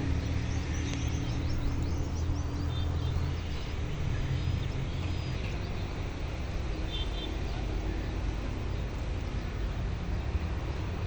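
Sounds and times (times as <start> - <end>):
birds chirping: 0.0 - 7.7
engine humming: 0.0 - 11.0.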